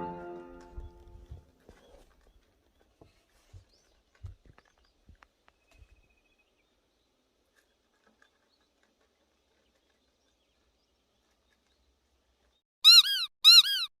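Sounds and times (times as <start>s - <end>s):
high-pitched animal calls: 12.8s - 13.9s.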